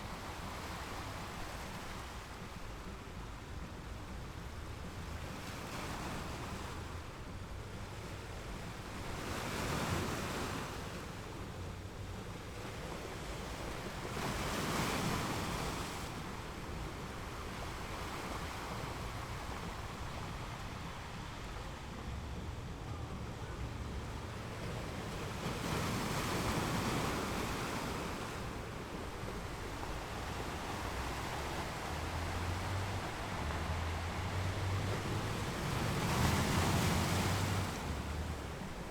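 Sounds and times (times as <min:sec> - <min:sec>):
sea waves breaking on rocks: 0:24.4 - 0:38.9.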